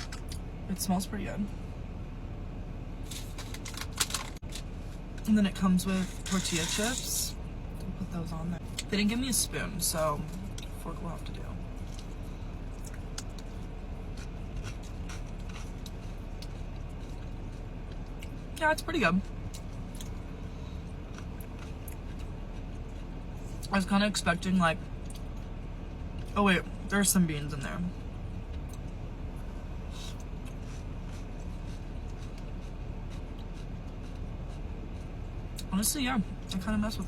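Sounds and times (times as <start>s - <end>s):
steady low hum: 0.0s - 37.0s
person chewing crunchy food: 11.8s - 18.5s, 19.2s - 23.7s, 28.5s - 35.7s.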